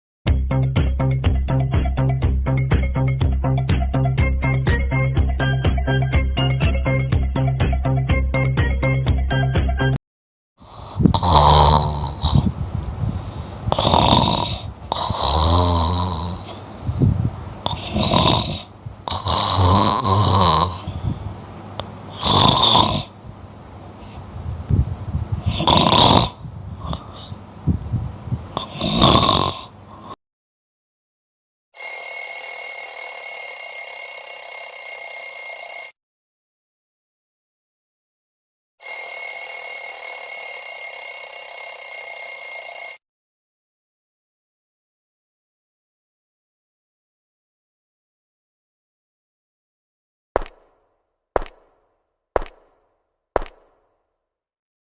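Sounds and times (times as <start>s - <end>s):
person snoring: 10.6s - 12.6s, 13.6s - 16.6s, 17.6s - 21.0s, 22.1s - 23.2s, 25.4s - 27.4s, 28.5s - 30.2s
quiet breathing: 10.7s - 11.2s, 26.8s - 27.4s
bell ringing: 31.8s - 35.9s, 38.8s - 43.0s.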